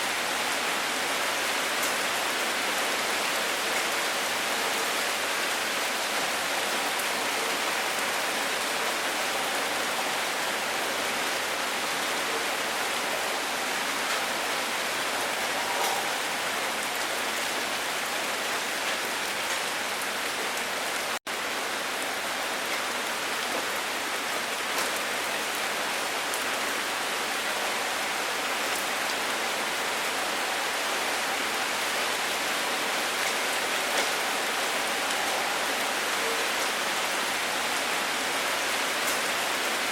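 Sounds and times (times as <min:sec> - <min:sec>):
steady rain hiss: 0:00.0 - 0:39.9
faint raindrop ticks: 0:34.0 - 0:34.2.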